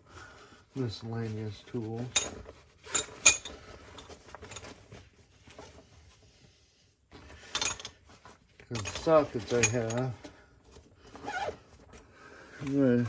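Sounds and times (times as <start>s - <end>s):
metal hand tools clinking: 8.7s - 10.1s.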